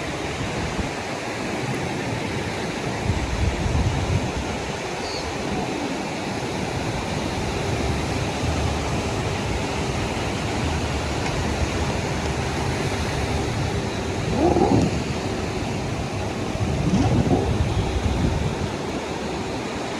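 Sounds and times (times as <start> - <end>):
sea surf breaking on sand: 6.4 - 19.9
wind rumbling on microphone: 6.4 - 19.9.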